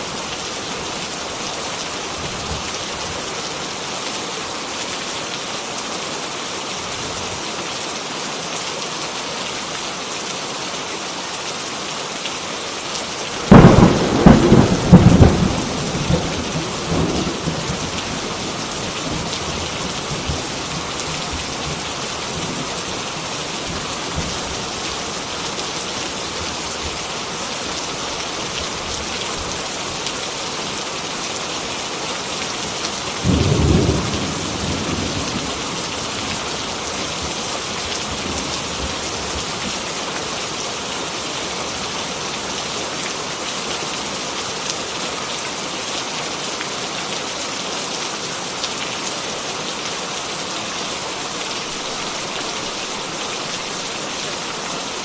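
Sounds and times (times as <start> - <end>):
heavy rain falling: 0.0 - 55.0
thunder rumble: 13.4 - 21.8.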